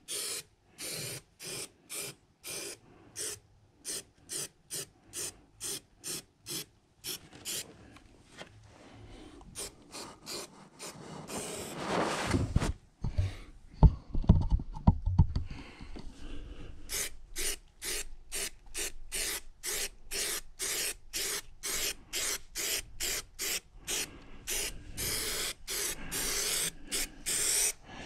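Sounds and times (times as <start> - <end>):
aerosol can spraying bursts: 16.9 - 27.8.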